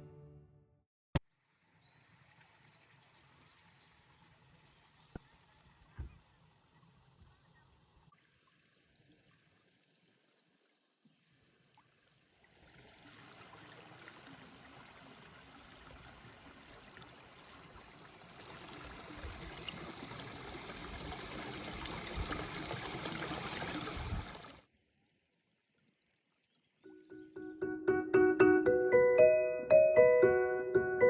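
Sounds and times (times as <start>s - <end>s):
running water rushing: 12.4s - 24.6s.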